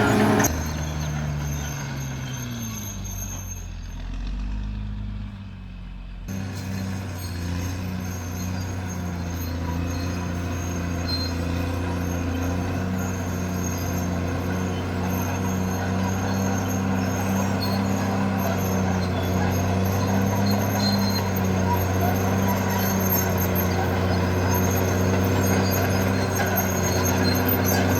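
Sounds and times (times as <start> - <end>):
bulldozer diesel engine drone: 0.0 - 27.9.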